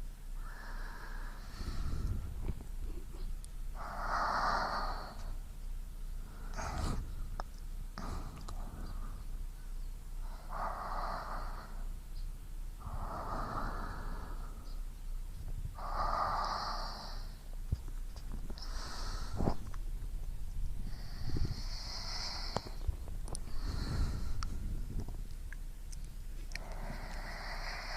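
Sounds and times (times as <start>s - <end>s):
human breathing: 0.4s - 5.4s, 6.1s - 12.1s, 12.8s - 15.0s, 15.6s - 19.9s, 20.8s - 27.9s
faint clicks: 6.5s - 8.7s, 22.4s - 23.6s, 24.4s - 27.6s.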